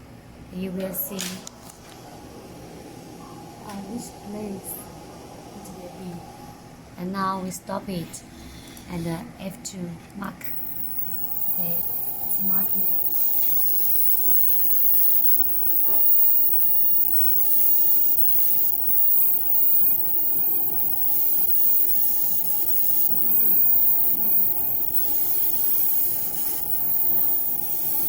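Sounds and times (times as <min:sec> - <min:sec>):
constant tone: 0:10.4 - 0:28.0
laser engraver hissing: 0:10.4 - 0:28.0.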